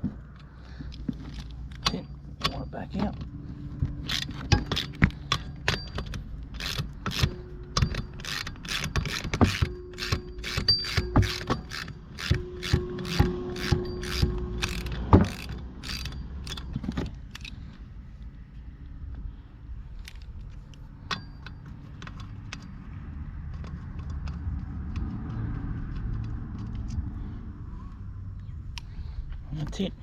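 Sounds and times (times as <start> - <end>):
ratchet wrench clicking: 4.0 - 17.6.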